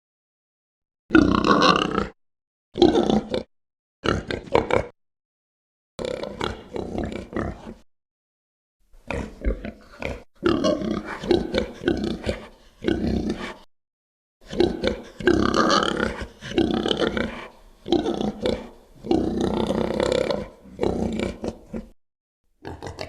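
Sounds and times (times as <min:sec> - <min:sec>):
guttural pig-like grunting calls: 0:01.1 - 0:02.2, 0:02.8 - 0:05.0, 0:06.0 - 0:07.8, 0:09.0 - 0:13.7, 0:14.4 - 0:22.0, 0:22.6 - 0:23.0.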